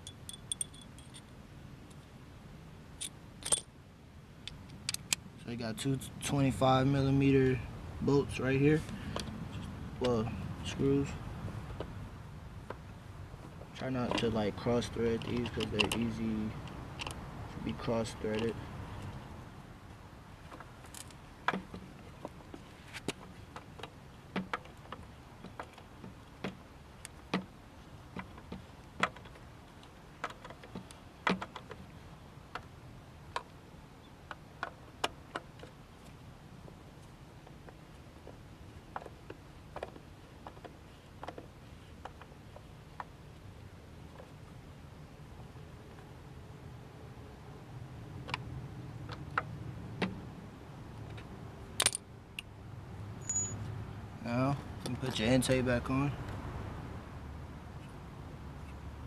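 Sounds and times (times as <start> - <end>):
faint steady hum: 0.0 - 59.0
hand tools clicking and tapping: 15.1 - 17.2.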